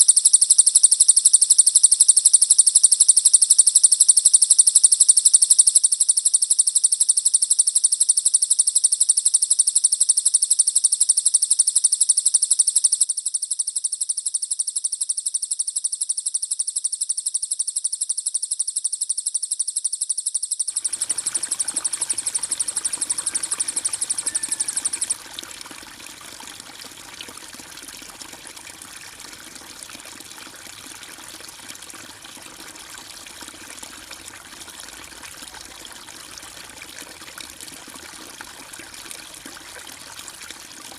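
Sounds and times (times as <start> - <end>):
trickling water: 20.7 - 40.9
songbird trilling: 20.8 - 25.4.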